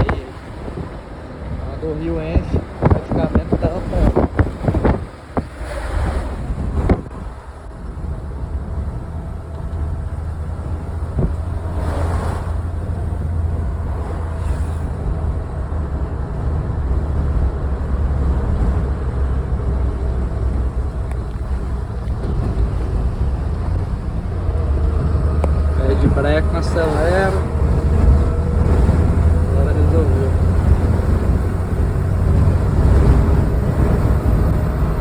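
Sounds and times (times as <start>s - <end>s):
vehicle driving drone: 0.0s - 35.0s
wind buffeting microphone: 0.0s - 35.0s.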